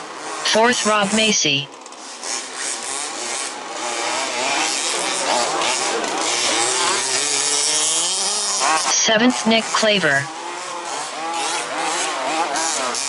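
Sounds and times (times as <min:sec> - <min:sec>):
small two-stroke engines racing: 0:00.0 - 0:13.0.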